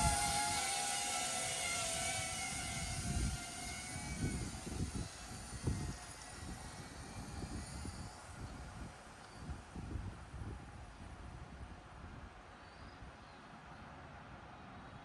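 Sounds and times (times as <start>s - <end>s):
drone propellers whining: 0.0s - 9.4s
wind rumbling on microphone: 0.0s - 12.4s.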